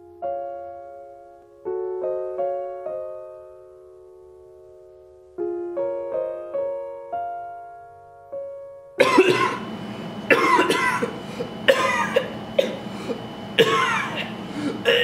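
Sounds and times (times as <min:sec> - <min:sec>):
soft electric piano notes: 0:00.0 - 0:09.0
person coughing hard: 0:09.0 - 0:09.7, 0:10.3 - 0:15.0.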